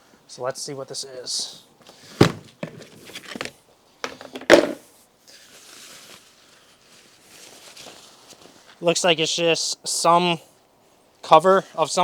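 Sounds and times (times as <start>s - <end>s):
contents rustling: 2.1s - 4.9s
plastic lid clacks and knocks: 2.2s - 4.8s.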